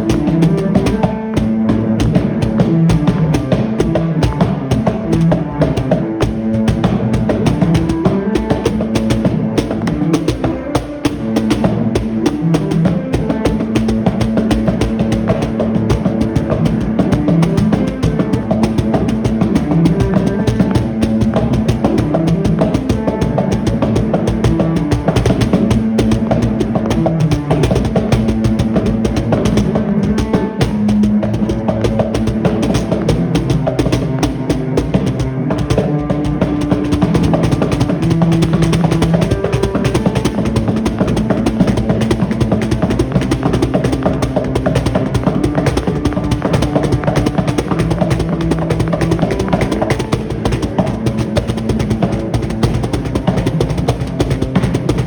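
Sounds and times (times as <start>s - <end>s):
drum kit playing fast beat: 0.0s - 55.0s
held low notes: 0.0s - 55.0s.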